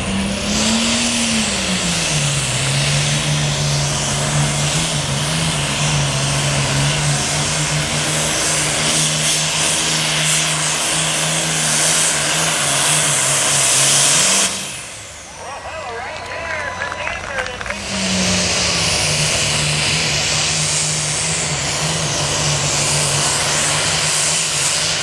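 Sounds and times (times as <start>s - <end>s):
tractor diesel engine revving: 0.0s - 25.0s.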